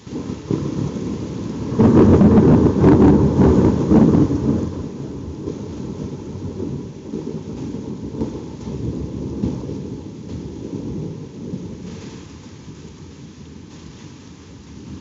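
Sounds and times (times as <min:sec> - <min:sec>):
rain hissing: 0:00.0 - 0:15.0
thunder rumbling: 0:00.0 - 0:15.0.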